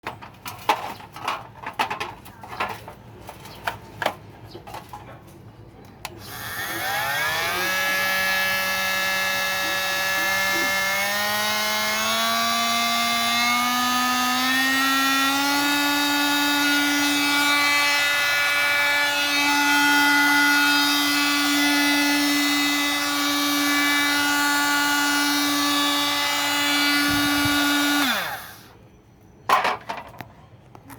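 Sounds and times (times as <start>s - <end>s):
oscillating multi-tool humming: 6.2s - 28.7s.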